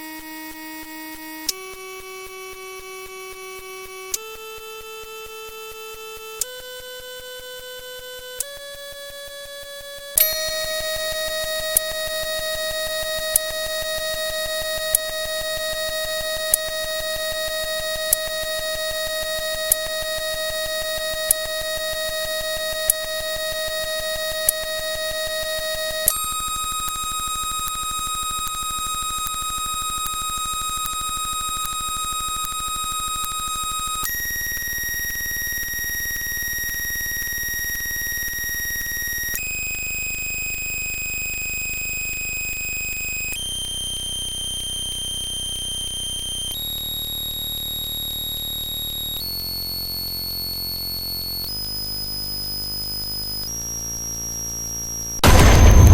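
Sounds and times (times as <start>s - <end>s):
sharp click: 55.2s - 55.9s
synthesized electronic tone: 55.2s - 55.9s.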